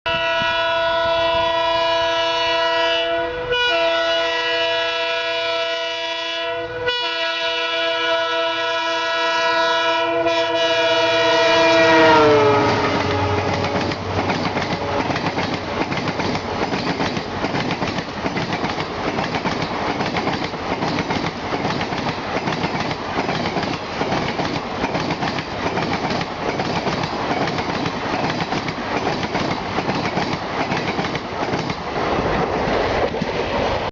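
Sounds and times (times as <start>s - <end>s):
locomotive horn: 0.1s - 15.8s
train wheels clickety-clack on rails: 11.8s - 33.9s.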